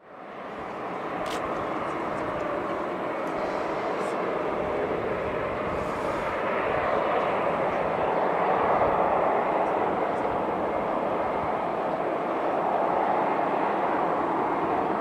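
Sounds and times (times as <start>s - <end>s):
jet engines running: 0.0s - 15.0s.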